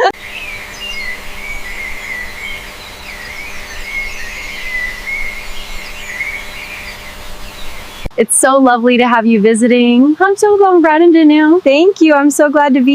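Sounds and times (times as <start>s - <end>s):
bird warbling song: 0.0s - 8.1s
faint steady hum: 0.0s - 12.9s.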